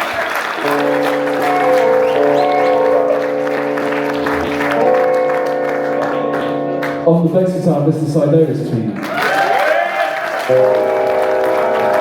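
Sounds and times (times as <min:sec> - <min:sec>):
audience applause: 0:00.0 - 0:07.0, 0:08.9 - 0:12.0
live blues band playing: 0:00.0 - 0:08.2, 0:10.5 - 0:12.0.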